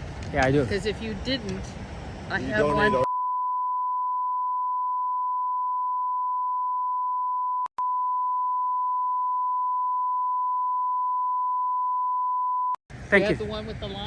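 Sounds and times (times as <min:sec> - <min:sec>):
high-pitched bleep tone: 0:02.6 - 0:12.8.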